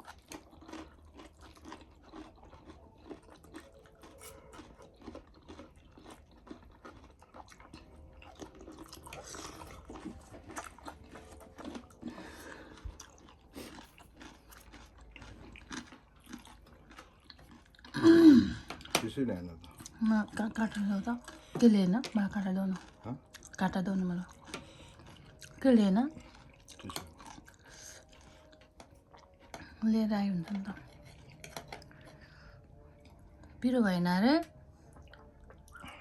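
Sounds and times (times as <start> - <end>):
person chewing crunchy food: 0.0 - 33.6, 34.6 - 36.0.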